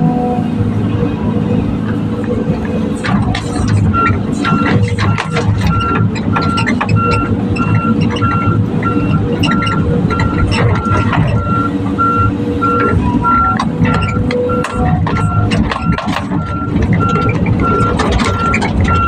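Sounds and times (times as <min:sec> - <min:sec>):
excavator diesel engine: 0:00.0 - 0:19.0
metallic clanks and knocks: 0:02.6 - 0:11.6, 0:12.8 - 0:19.0
travel alarm beeping: 0:03.6 - 0:19.0.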